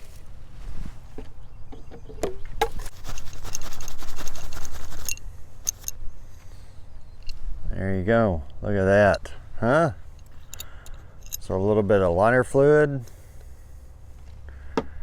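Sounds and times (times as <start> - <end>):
steel wool scratching metal: 2.8 - 5.9
handling clicks: 4.4 - 6.0.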